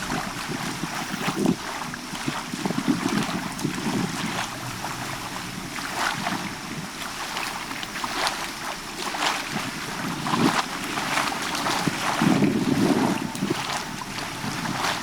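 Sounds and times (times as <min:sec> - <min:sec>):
water lapping and splashing: 0:00.0 - 0:15.0
wind rumbling on microphone: 0:00.0 - 0:15.0.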